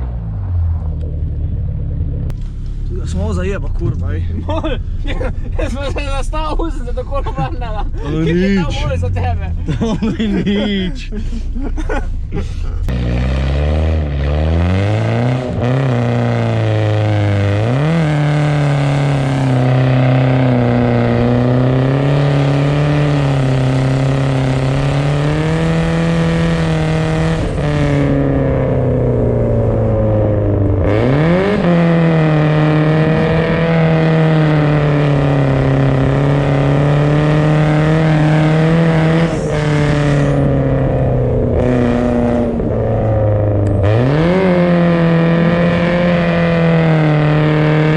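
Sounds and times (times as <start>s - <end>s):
car engine revving high: 7.2s - 47.9s.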